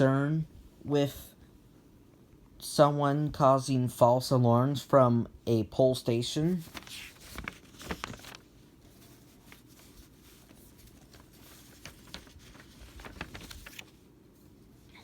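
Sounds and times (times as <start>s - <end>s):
faint rustles: 6.6s - 15.0s.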